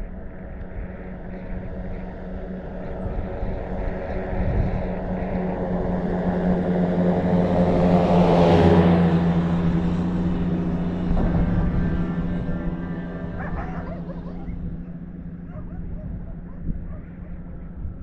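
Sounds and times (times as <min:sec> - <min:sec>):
tractor diesel engine passing: 0:00.0 - 0:18.0.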